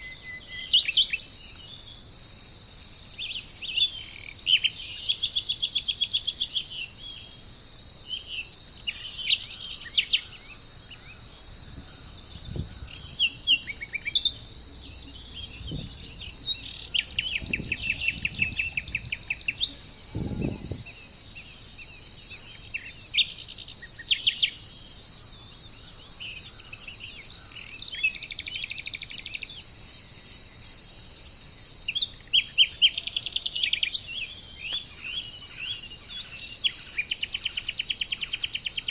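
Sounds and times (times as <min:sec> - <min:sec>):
insects droning: 0:00.0 - 0:38.9
birds chirping and trilling: 0:08.0 - 0:29.7.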